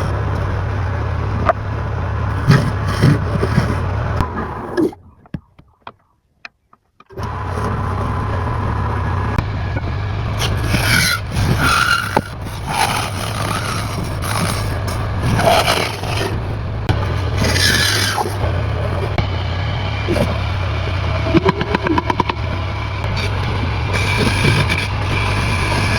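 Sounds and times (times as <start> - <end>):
power tool cutting wood: 10.3 - 16.5, 17.2 - 19.2, 20.1 - 25.9.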